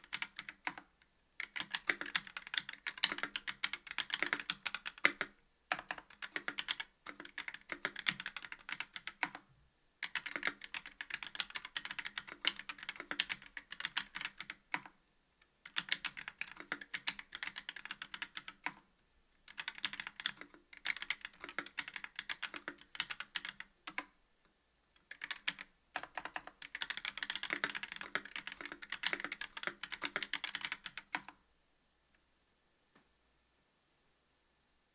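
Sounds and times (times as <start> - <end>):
mechanical keyboard typing: 0.0 - 15.0, 15.6 - 18.8, 19.5 - 24.1, 25.0 - 31.4.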